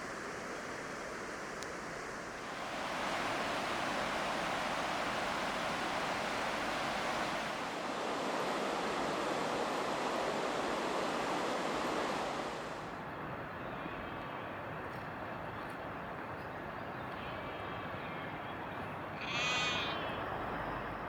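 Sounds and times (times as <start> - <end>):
steady rushing noise: 0.0 - 13.0.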